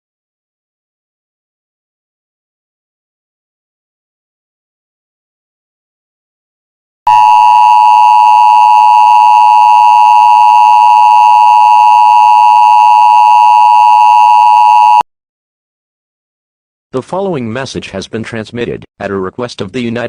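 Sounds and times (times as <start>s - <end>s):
two-tone alert signal: 7.1s - 15.0s.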